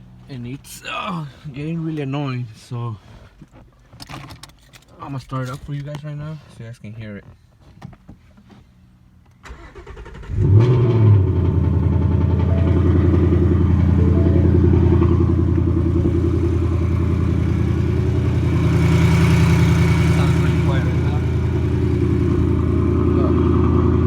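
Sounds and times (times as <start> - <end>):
car engine starting and idling: 9.3 - 24.0.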